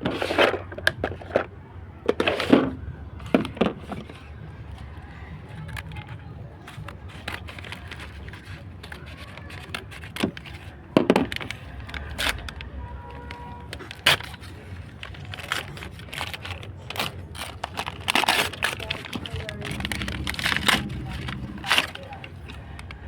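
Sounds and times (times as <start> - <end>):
packaging crinkling and rustling: 2.1 - 23.0
steady low rumble: 17.4 - 23.0.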